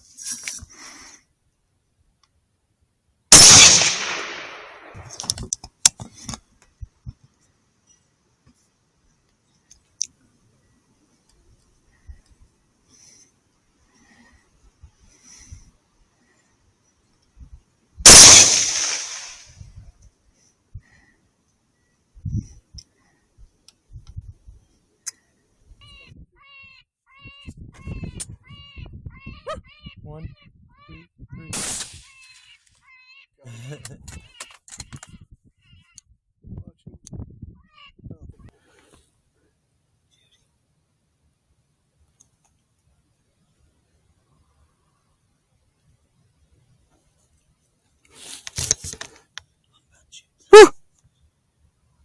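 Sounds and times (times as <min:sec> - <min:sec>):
rifle shot: 0:03.3 - 0:05.2, 0:18.1 - 0:19.5, 0:31.6 - 0:32.1
sharp clicks: 0:03.4 - 0:05.6, 0:18.1 - 0:19.4
coyote yelping: 0:29.2 - 0:30.0.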